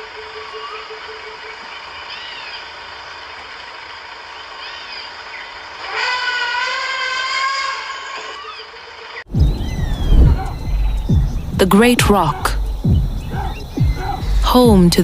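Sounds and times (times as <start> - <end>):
chirping bird calls: 4.3 - 15.0.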